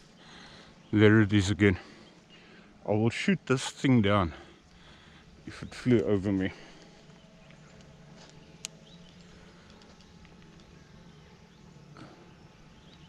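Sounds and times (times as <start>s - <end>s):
low steady hum: 0.0s - 13.0s
footsteps on forest trail: 4.7s - 10.8s.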